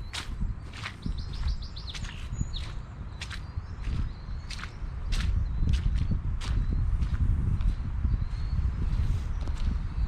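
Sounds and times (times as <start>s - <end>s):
songbird trilling: 0.0s - 7.0s
footsteps crunching on brush: 0.0s - 7.8s.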